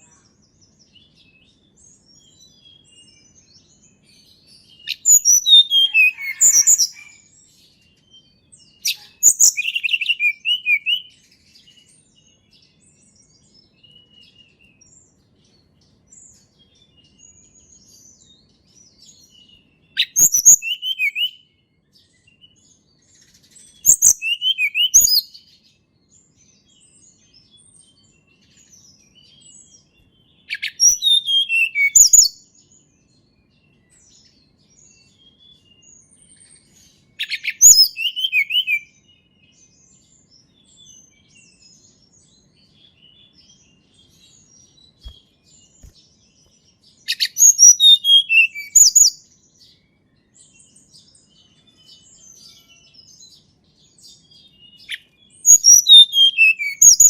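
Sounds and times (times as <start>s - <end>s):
faint bird chirps: 0.0s - 57.0s
songbird singing high notes: 4.8s - 7.1s, 8.8s - 11.1s, 23.8s - 25.4s, 30.5s - 32.4s, 37.2s - 38.9s, 47.1s - 49.2s, 54.7s - 57.0s.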